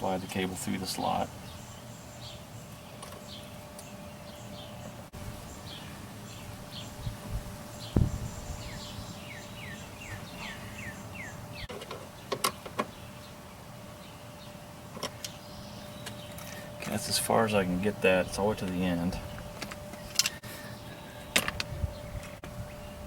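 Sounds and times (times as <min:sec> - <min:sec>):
faint steady hum: 0:00.0 - 0:23.0
bird chirping: 0:01.3 - 0:13.4, 0:15.2 - 0:16.7.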